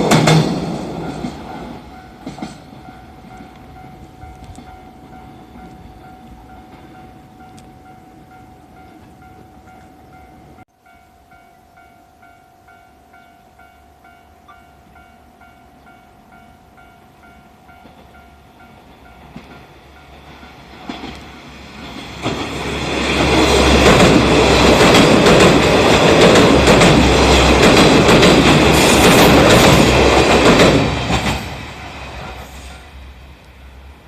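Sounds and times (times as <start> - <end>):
train wheels clacking over rail joints: 0.0 - 6.9, 18.9 - 32.9
level crossing warning bell: 1.1 - 20.6.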